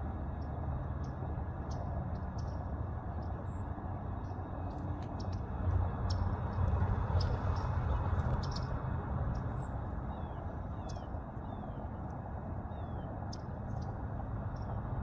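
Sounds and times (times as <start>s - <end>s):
steady low rumble: 0.0s - 15.0s
birds chipping: 5.2s - 11.8s.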